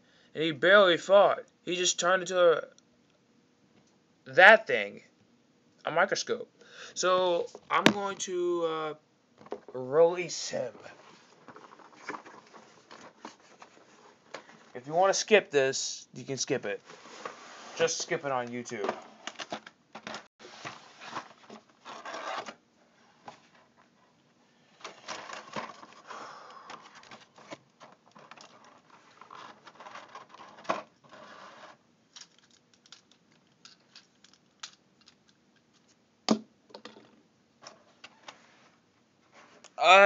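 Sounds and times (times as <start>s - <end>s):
toy packaging rustling: 10.9s - 14.7s, 24.8s - 36.0s.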